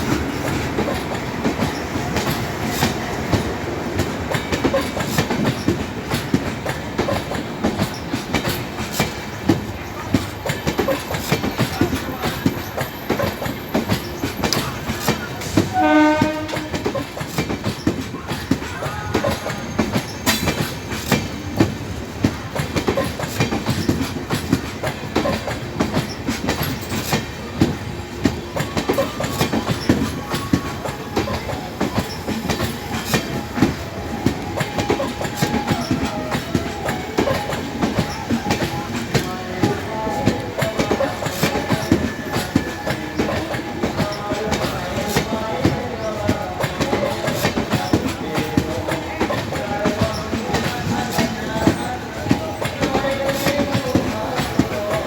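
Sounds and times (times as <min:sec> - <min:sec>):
train wheels clattering over joints: 0:00.0 - 0:55.0
train horn blast: 0:15.7 - 0:17.1.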